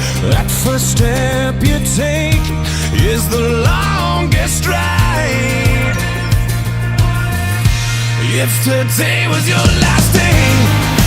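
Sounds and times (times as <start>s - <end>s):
drum beat: 0.0s - 8.7s, 9.5s - 11.0s
rock song instrumental: 0.0s - 11.0s.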